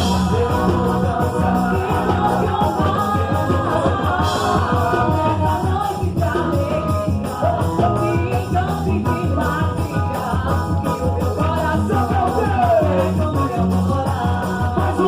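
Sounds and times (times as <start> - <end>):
sung melody over driving beat: 0.0 - 15.0.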